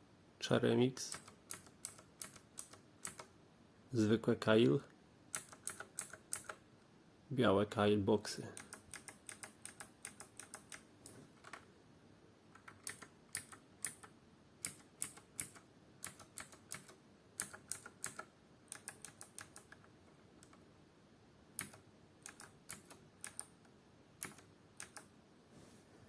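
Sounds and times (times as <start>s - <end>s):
mechanical keyboard clicking: 1.1s - 3.3s, 5.3s - 6.6s, 8.6s - 10.8s, 12.6s - 20.6s, 21.6s - 23.5s, 24.2s - 25.1s.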